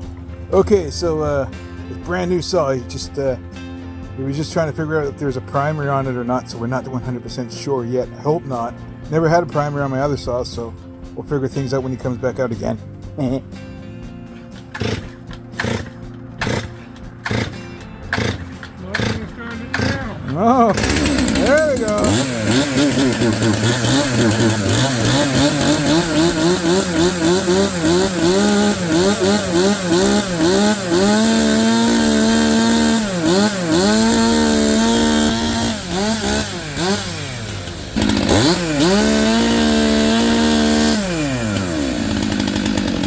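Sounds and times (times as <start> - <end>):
chainsaw revving: 14.4 - 43.0.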